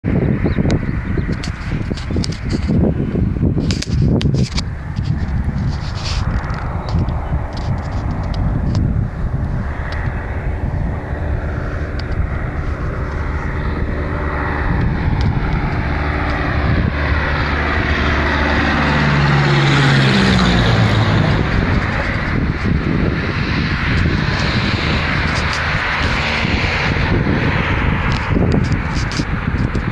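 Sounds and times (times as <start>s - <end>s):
propeller plane engine droning: 0.0s - 29.9s.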